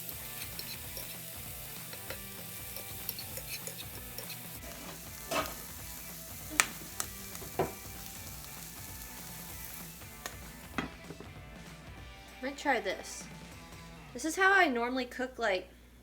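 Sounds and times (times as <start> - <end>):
utensil clicking against pan: 0.0 - 5.6, 10.2 - 10.6
food sizzling in a frying pan: 0.0 - 11.4.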